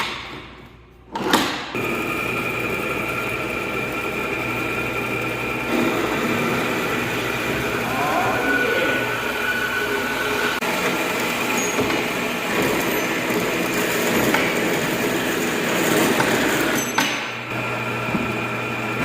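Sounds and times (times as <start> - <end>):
bandsaw cutting steel: 3.6 - 17.5.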